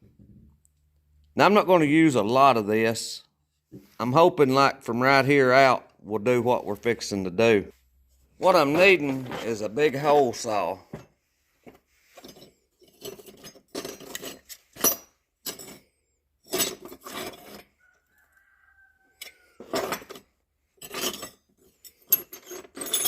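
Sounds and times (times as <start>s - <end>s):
metal tools clinking: 12.1s - 17.7s, 19.2s - 23.0s.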